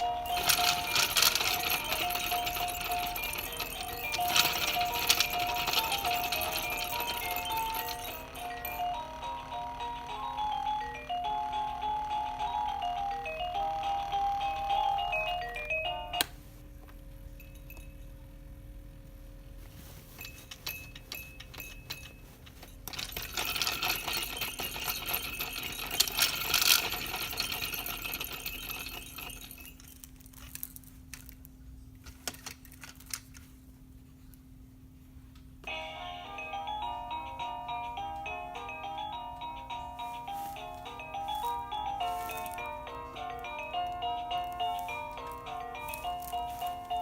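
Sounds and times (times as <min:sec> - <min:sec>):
baby toys rattling and jingling: 0:00.0 - 0:16.1, 0:19.8 - 0:31.3, 0:37.9 - 0:47.0
electronic toy tune: 0:00.0 - 0:16.3
toy clicks: 0:00.0 - 0:16.3, 0:20.6 - 0:31.4, 0:41.3 - 0:47.0
low steady hum: 0:00.0 - 0:47.0.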